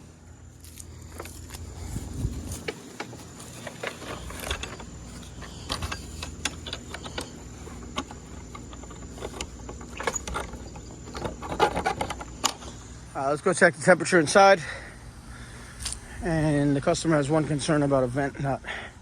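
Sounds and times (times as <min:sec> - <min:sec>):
steady low hum: 0:00.0 - 0:19.0
equipment clicking and knocking: 0:02.6 - 0:12.7.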